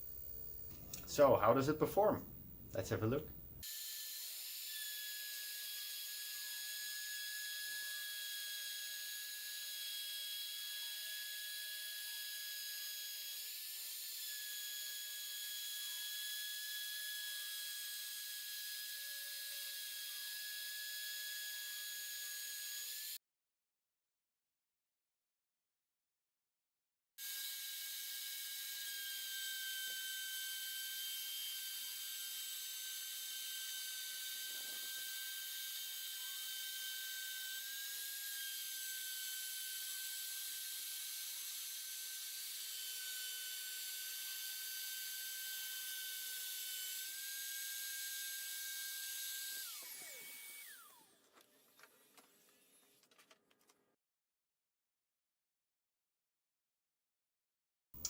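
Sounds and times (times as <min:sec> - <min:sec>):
router spindle whining: 0:27.2 - 0:53.1
vacuum cleaner running: 0:34.0 - 0:37.2, 0:49.4 - 0:52.7.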